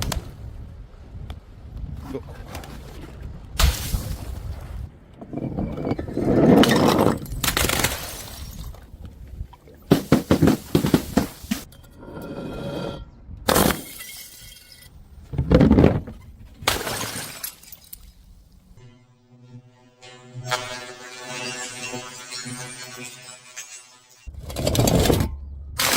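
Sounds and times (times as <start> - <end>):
glass bottles smashing: 6.5 - 8.8, 13.5 - 14.9, 15.6 - 18.3
glass shards clinking: 13.7 - 14.9.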